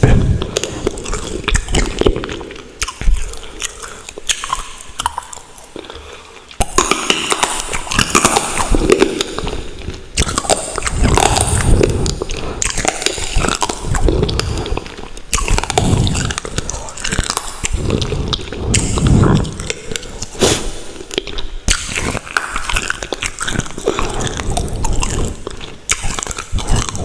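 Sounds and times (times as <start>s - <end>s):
chewing and wet mouth sounds: 0.0s - 27.0s.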